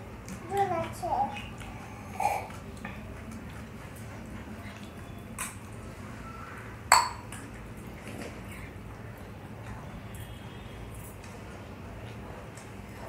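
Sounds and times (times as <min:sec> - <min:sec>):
dishes clinking: 0:06.9 - 0:07.4.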